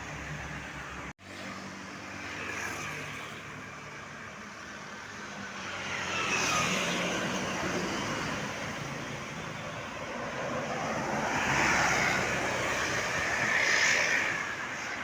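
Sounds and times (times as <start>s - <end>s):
tyre and road noise: 0.0s - 15.0s.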